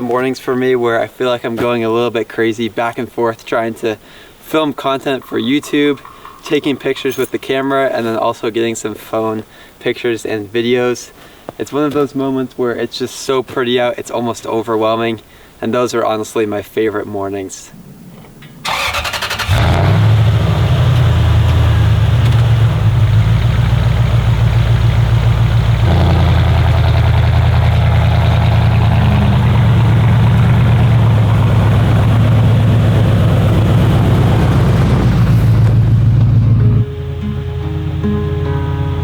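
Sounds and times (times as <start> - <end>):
engine cranking on starter: 18.6 - 36.8
engine running steadily: 18.7 - 39.0.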